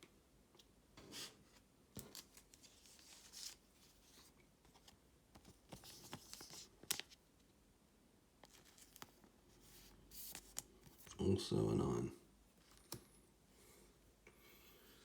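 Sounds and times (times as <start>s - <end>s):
trading cards rustling: 2.0s - 7.2s.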